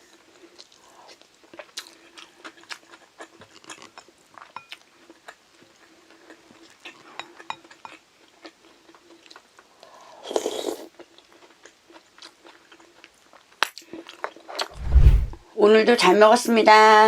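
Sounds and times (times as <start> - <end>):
person chewing food: 1.5 - 9.6, 11.0 - 14.4.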